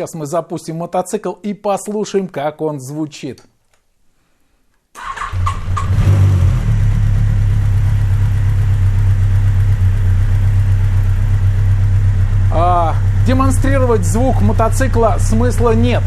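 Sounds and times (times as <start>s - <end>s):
motorcycle engine revving and idling: 5.3s - 16.0s.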